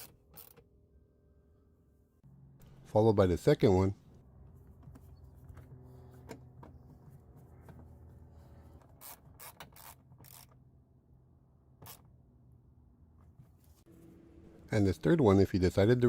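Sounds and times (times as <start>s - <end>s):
steady low hum: 0.8s - 9.0s, 12.5s - 16.0s
hand tool driving a screw: 9.0s - 10.6s.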